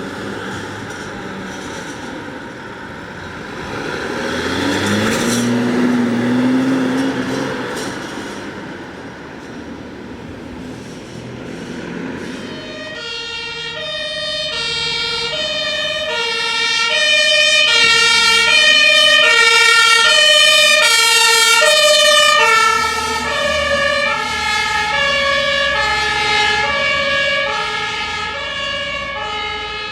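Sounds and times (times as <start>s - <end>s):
two-tone siren: 12.2s - 29.9s.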